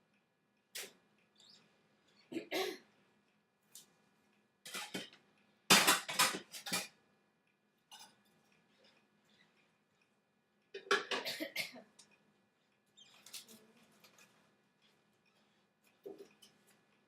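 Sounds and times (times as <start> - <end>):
tableware clattering: 4.7 - 6.9.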